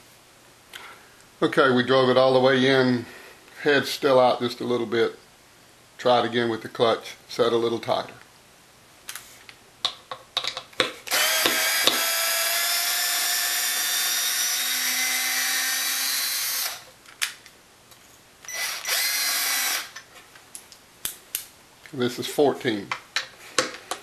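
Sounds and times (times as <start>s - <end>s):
cordless screwdriver motor: 11.1s - 16.9s, 18.5s - 20.0s.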